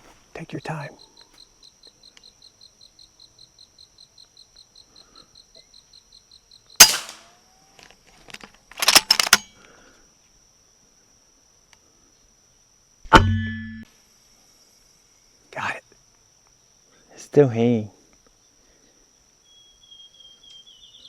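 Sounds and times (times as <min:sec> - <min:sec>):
insect chirping: 0:00.0 - 0:21.0
air rifle shot crack: 0:06.8 - 0:07.3.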